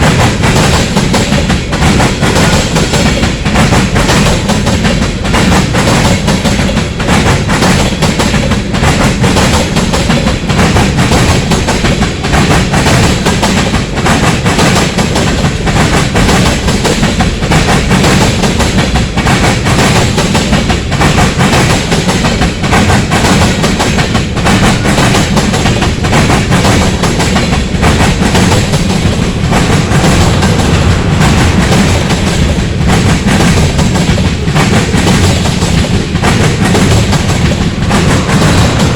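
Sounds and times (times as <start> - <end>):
train wheels clattering on rails: 0.0 - 38.9
deep rumble: 27.8 - 34.9.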